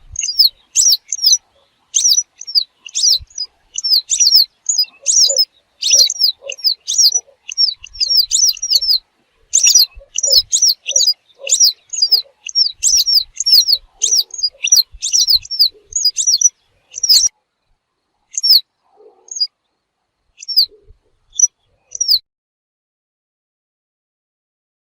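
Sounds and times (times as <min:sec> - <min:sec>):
wagtail calls: 0:00.0 - 0:17.3, 0:18.3 - 0:18.6, 0:19.2 - 0:19.5, 0:20.4 - 0:22.2.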